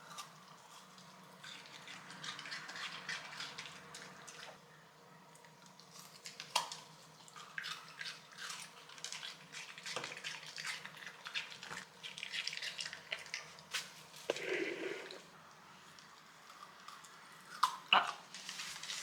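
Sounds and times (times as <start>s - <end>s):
dog chewing and licking: 0.0s - 4.6s, 5.7s - 14.6s.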